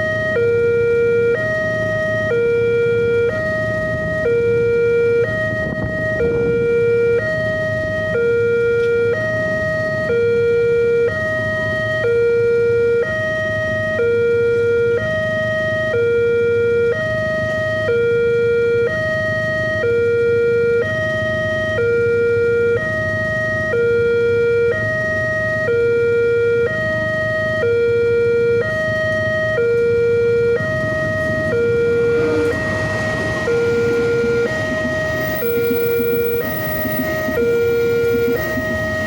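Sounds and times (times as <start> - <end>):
two-tone crossing alarm: 0.0 - 39.0
rushing noise: 30.3 - 39.0.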